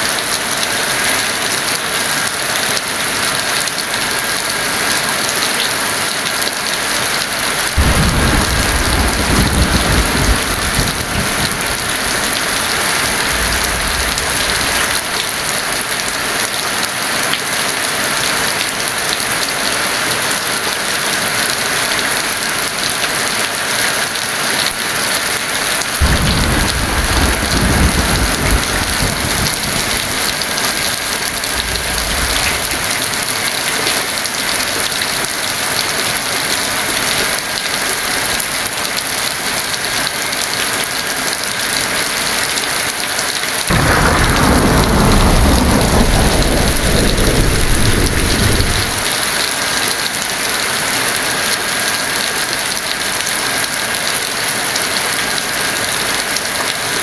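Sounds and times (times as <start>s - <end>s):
heavy rain hissing: 3.0s - 18.5s, 19.6s - 38.8s, 41.1s - 51.8s
thunder rumbling: 7.7s - 16.0s, 26.0s - 33.7s, 43.7s - 49.4s.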